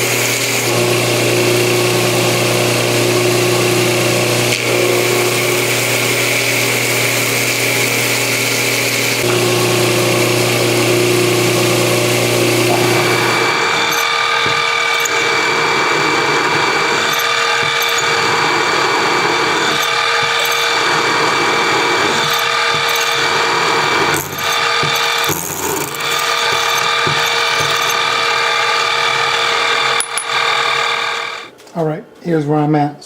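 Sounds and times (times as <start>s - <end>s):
power tool motor hum: 0.0s - 31.5s.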